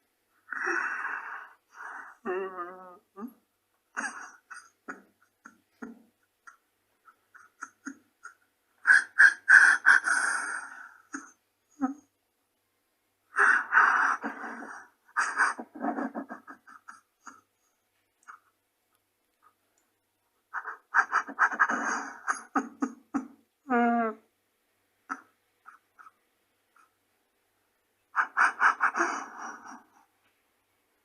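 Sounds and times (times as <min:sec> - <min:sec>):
man crying and sobbing: 0:13.6 - 0:17.5.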